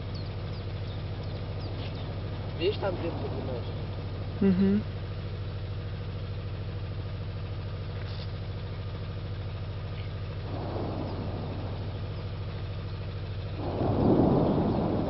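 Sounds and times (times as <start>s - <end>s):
low volcanic drone: 0.0s - 7.8s, 8.5s - 15.0s
rushing swell of noise: 10.4s - 12.7s.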